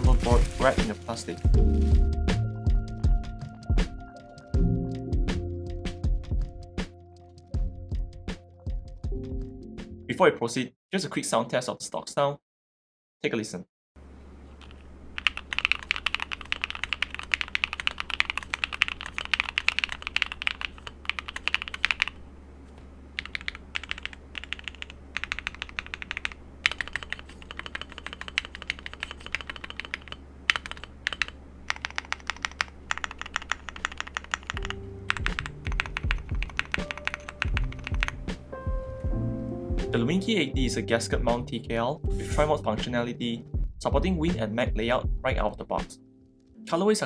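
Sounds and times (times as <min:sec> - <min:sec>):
background music: 0:00.0 - 0:10.2, 0:34.5 - 0:47.0
mechanical keyboard typing: 0:14.6 - 0:22.2, 0:23.2 - 0:38.2.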